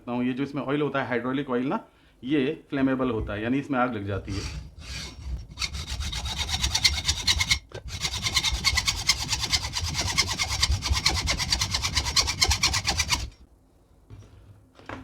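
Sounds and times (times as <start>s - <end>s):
hand tool rasping metal: 4.3s - 13.4s.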